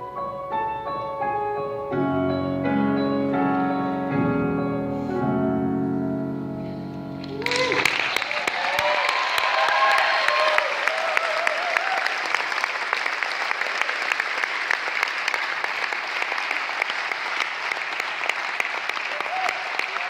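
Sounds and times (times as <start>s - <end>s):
audience applauding: 7.2s - 20.0s.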